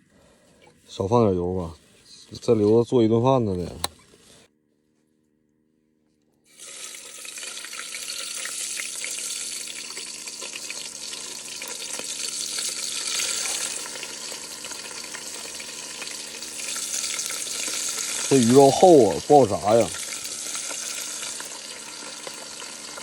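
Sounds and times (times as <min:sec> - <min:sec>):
fish sizzling in hot oil: 0:06.5 - 0:23.0.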